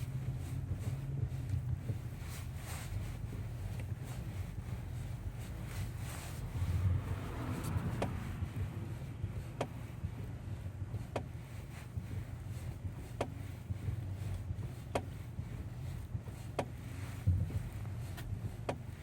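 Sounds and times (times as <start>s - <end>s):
low cabin rumble: 0.0s - 19.0s
steering knocking: 0.0s - 19.0s.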